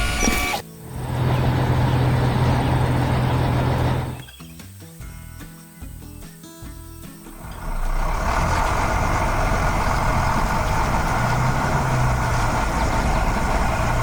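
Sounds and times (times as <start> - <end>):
heavy vehicle engine running: 0.0 - 4.2, 7.3 - 14.0.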